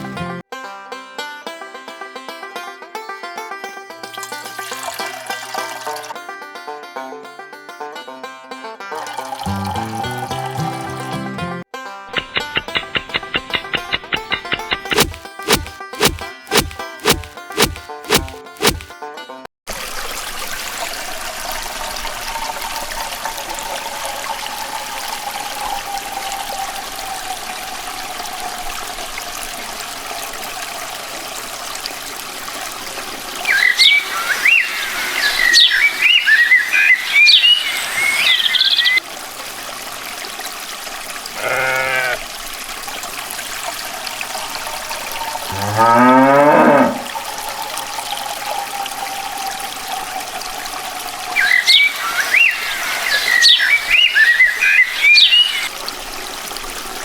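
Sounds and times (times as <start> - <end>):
water trickling: 4.1 - 6.2, 8.9 - 11.4, 19.7 - 57.0
birds chirping: 12.2 - 18.8, 33.4 - 39.0, 51.3 - 55.7
cow mooing: 45.5 - 47.2.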